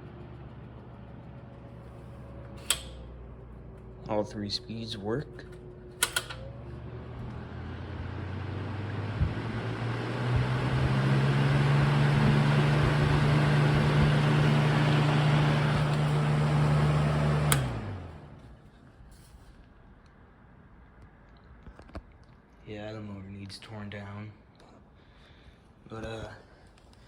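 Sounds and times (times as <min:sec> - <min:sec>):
box fan motor humming: 0:00.0 - 0:18.6
fan switch click: 0:02.6 - 0:03.1, 0:05.4 - 0:06.6, 0:15.5 - 0:16.4, 0:17.3 - 0:17.9.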